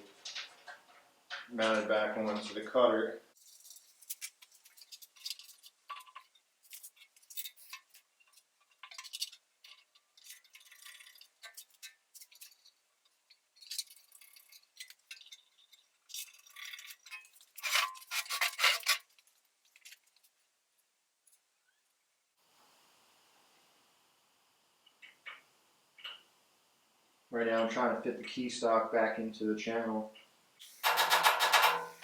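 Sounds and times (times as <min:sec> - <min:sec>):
metal tools clinking and rattling: 0:30.7 - 0:32.0.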